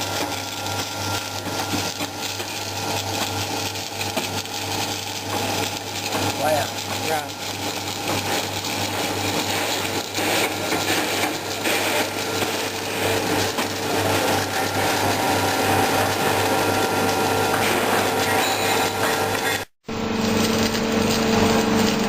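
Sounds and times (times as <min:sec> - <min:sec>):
welding machine running: 0:00.0 - 0:22.0.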